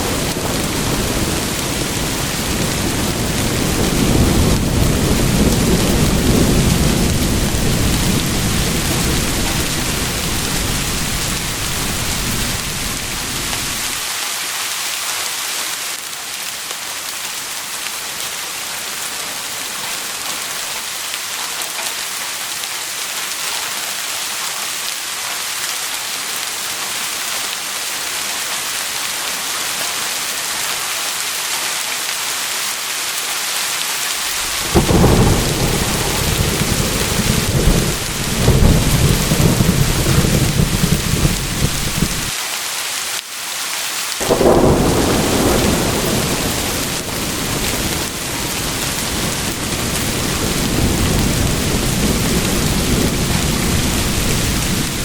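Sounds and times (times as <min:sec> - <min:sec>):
rolling thunder: 0:00.0 - 0:14.0, 0:34.2 - 0:42.3, 0:44.2 - 0:55.0
heavy rain: 0:00.0 - 0:55.0.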